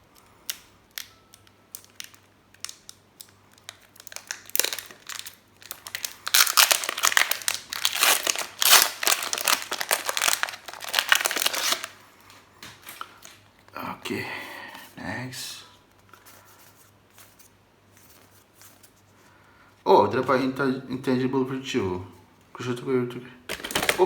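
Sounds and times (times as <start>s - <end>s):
foil wrapper crinkling: 0.5s - 13.4s.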